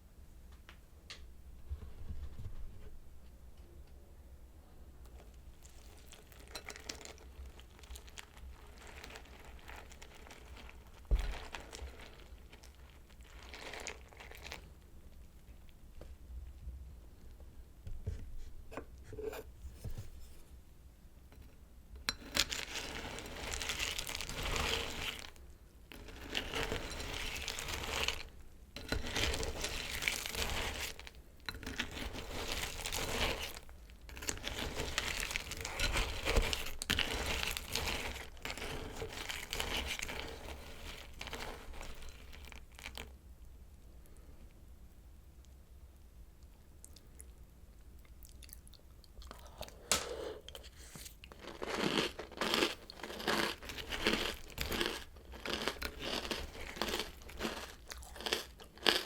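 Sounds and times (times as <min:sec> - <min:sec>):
plastic packaging crinkling and tearing: 0:05.6 - 0:14.7, 0:22.4 - 0:43.1.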